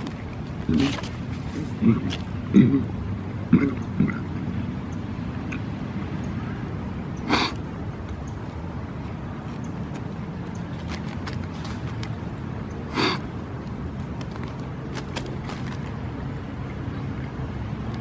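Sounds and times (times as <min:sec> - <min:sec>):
man making vocal sounds: 0:01.6 - 0:04.4
sharp breath through the nose: 0:07.2 - 0:07.6, 0:12.9 - 0:13.3.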